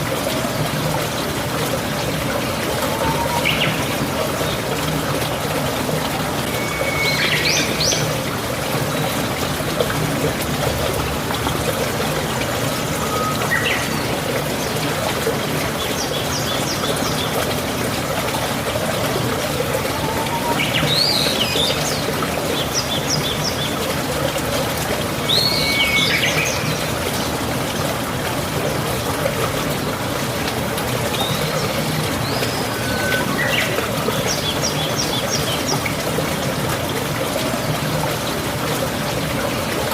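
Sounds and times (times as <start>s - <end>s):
running water: 0.0s - 39.9s
birds chirping and trilling: 2.9s - 3.9s, 19.9s - 23.7s, 31.2s - 35.8s.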